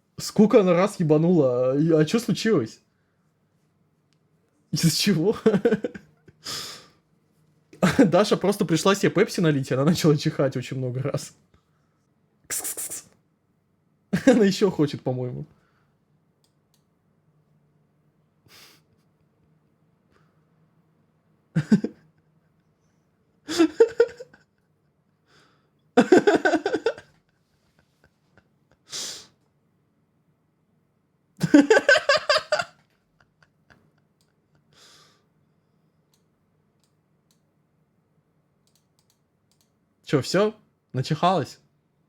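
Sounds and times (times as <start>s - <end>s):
cat sneezing: 12.5s - 13.2s
rapid laughter: 23.5s - 24.7s, 26.0s - 28.8s, 31.4s - 34.2s.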